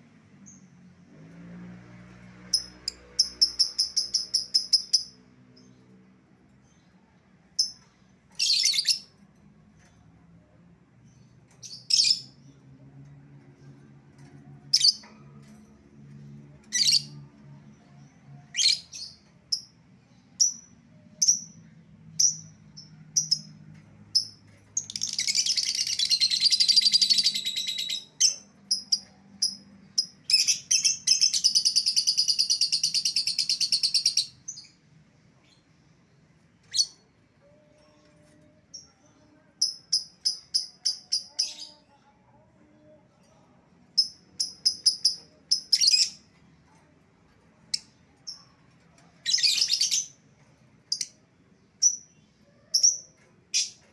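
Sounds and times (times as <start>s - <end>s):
lovebird chirps and chattering trills: 44.0s - 46.2s.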